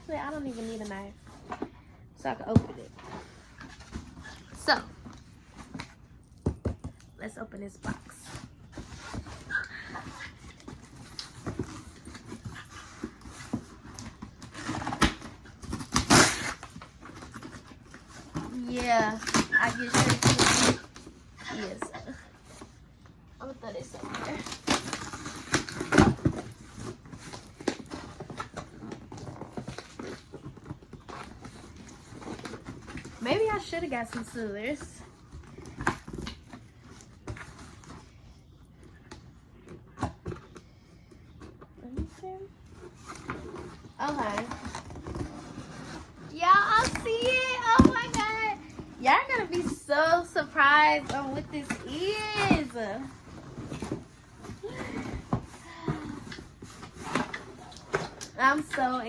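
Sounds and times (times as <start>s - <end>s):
cardboard scraping and crackling: 0.0s - 22.8s, 23.4s - 59.0s
cardboard box being torn open: 8.9s - 21.8s, 24.0s - 34.8s
packing tape ripping: 13.8s - 17.6s, 18.2s - 21.0s
scratchy rustling: 42.4s - 59.0s.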